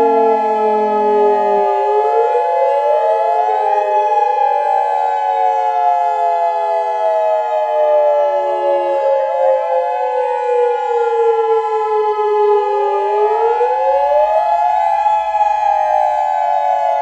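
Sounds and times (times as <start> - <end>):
warning sirens wailing: 0.0 - 17.0.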